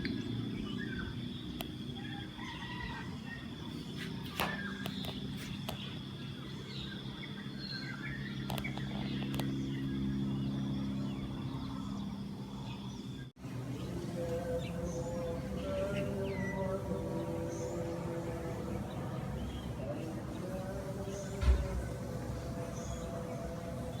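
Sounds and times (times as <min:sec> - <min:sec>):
continuous high-pitched tone: 0:00.0 - 0:24.0
small birds chirping: 0:00.0 - 0:24.0
steady low hum: 0:00.0 - 0:24.0
rooster crowing: 0:01.9 - 0:04.8.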